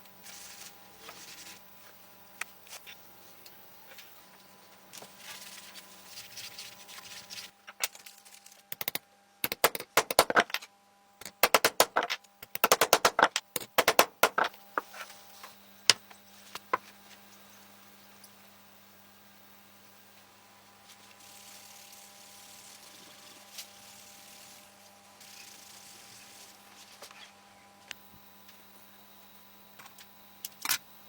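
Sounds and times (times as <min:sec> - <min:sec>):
sharp clicks and taps: 0:08.8 - 0:10.6, 0:11.2 - 0:14.6.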